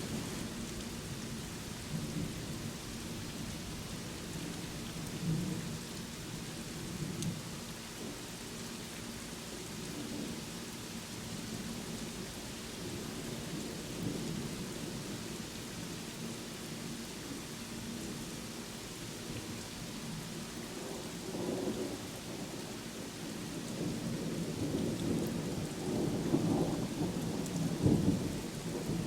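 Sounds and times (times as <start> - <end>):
rain hissing: 0.0 - 5.8.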